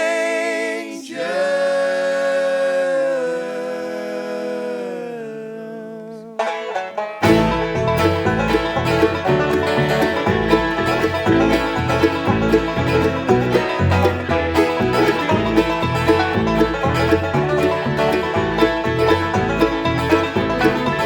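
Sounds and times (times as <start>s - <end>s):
a cappella vocal harmony: 0.0s - 6.4s
bluegrass band with banjo and guitar: 6.4s - 21.0s
plucked notes: 6.4s - 21.0s.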